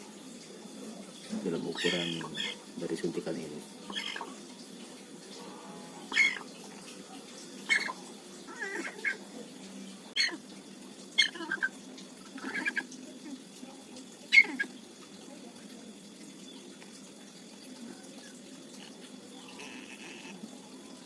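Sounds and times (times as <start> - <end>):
chicken squawking: 1.8 - 2.6, 3.9 - 4.4, 6.0 - 6.6, 7.6 - 9.2, 10.2 - 10.4, 11.1 - 12.9, 14.3 - 14.8.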